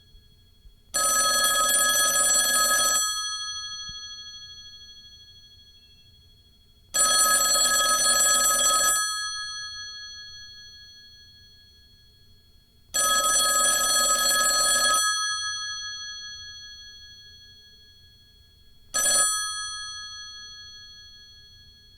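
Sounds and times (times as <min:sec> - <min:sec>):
telephone bell ringing: 0:01.0 - 0:05.4, 0:07.0 - 0:10.8, 0:13.0 - 0:17.6, 0:18.9 - 0:21.9.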